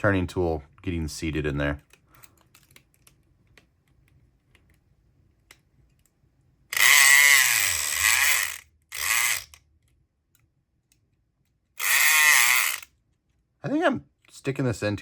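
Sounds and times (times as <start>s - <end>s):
electric pick gun buzzing: 6.7s - 9.5s, 11.8s - 12.9s.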